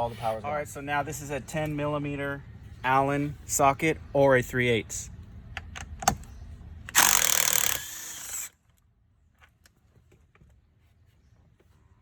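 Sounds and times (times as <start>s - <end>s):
power tool running: 7.0s - 8.5s.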